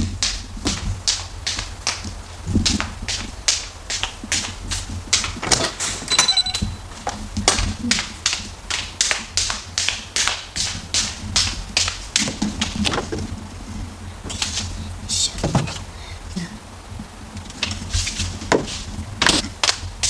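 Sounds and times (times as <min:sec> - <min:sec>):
footsteps walking briskly: 0:00.0 - 0:06.1, 0:06.7 - 0:20.0
knocks and clatters: 0:11.4 - 0:14.7, 0:15.4 - 0:15.9.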